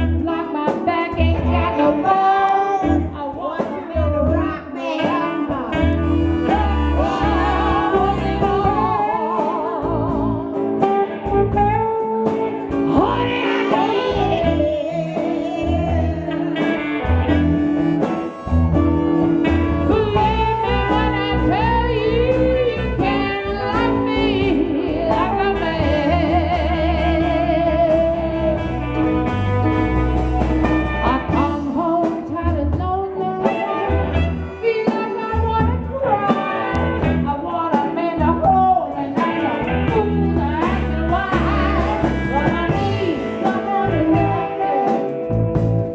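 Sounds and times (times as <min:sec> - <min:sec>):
blues band playing: 0:00.0 - 0:45.9
person singing: 0:00.0 - 0:45.9
low bass line: 0:05.6 - 0:09.2, 0:09.8 - 0:11.9, 0:14.1 - 0:31.7, 0:39.6 - 0:44.4, 0:45.3 - 0:45.9.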